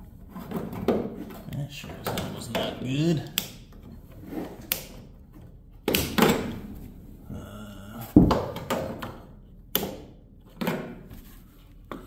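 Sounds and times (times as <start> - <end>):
knocks and clanks: 8.1 - 9.2.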